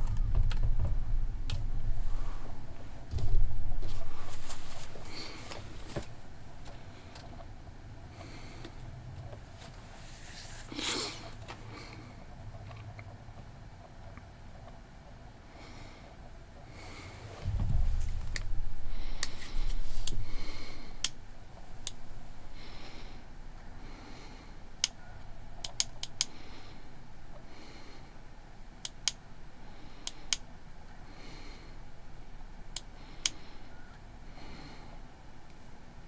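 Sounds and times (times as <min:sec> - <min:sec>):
soft regular breathing: 0:01.6 - 0:12.4, 0:15.4 - 0:28.8, 0:29.4 - 0:36.0
small sharp clicks: 0:24.8 - 0:25.0, 0:25.6 - 0:26.4.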